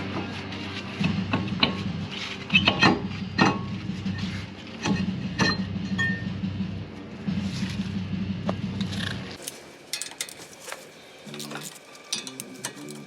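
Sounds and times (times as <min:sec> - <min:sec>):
low hum: 0:00.0 - 0:09.4
metal tools clinking on steel: 0:09.4 - 0:13.0.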